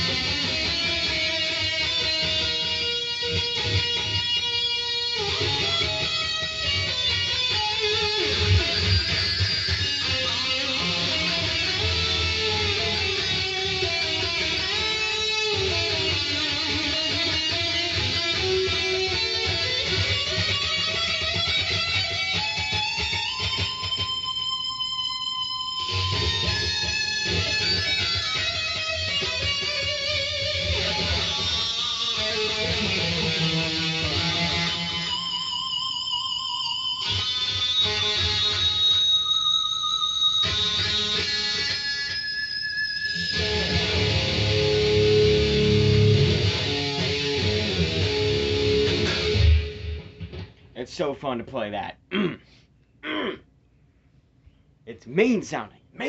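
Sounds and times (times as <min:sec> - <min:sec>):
distorted electric guitar solo: 0:00.0 - 0:50.6.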